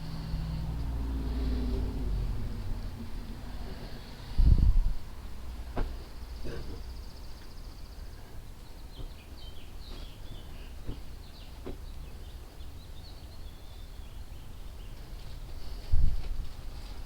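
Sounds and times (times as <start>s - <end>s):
low rumble: 0.0s - 5.3s
small birds chirping: 6.2s - 15.3s.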